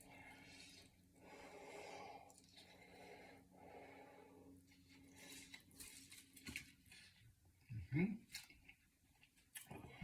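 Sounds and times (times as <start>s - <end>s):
man breathing heavily: 0.0s - 4.7s.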